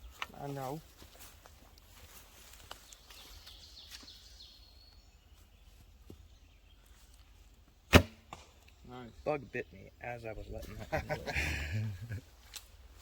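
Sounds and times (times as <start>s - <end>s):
bird chirping: 1.6s - 7.9s.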